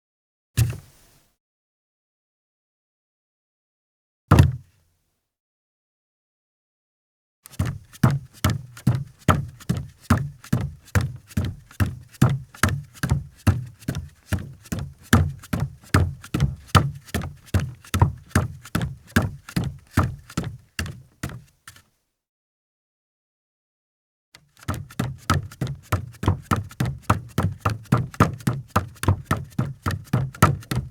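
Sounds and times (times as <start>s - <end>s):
bare footsteps on a deck: 7.6s - 21.5s, 24.6s - 30.9s.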